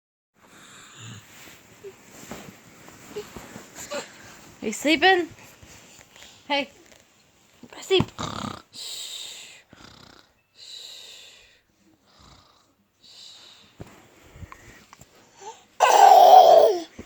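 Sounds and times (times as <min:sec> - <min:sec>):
toddler fake snoring: 0:08.2 - 0:08.8, 0:09.8 - 0:10.4, 0:15.8 - 0:16.9.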